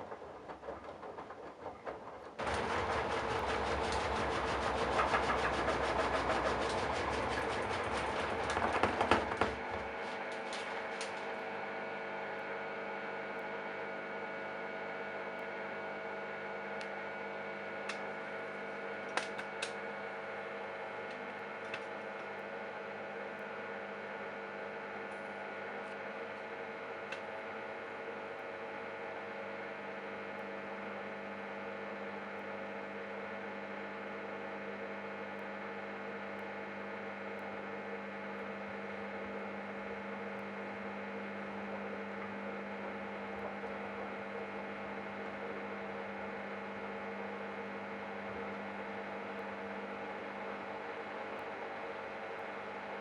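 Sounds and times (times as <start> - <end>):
washing machine drum tumbling: 0.0 - 10.0
washing machine electrical hum: 0.0 - 53.0.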